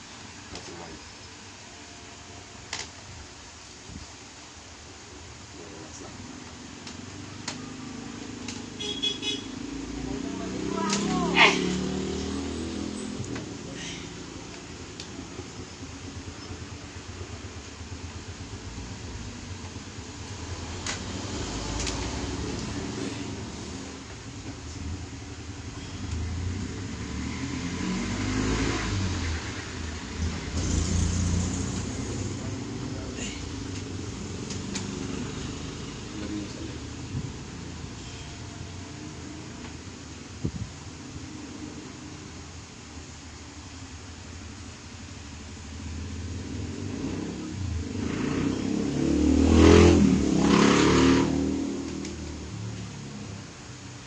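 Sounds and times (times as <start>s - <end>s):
vehicle driving past: 9.5s - 15.7s, 20.2s - 24.0s, 25.8s - 38.0s, 45.5s - 53.6s
engine running with low hum: 38.9s - 54.0s.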